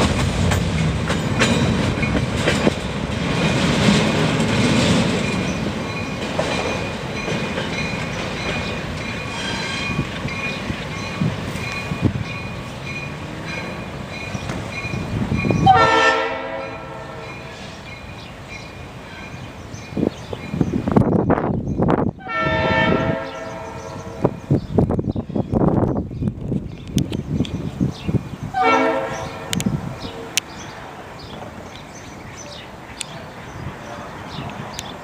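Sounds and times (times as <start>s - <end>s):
train wheels clicking over rail joints: 0.0s - 15.8s
locomotive air horn blast: 15.6s - 17.3s, 22.2s - 24.2s, 28.6s - 29.6s.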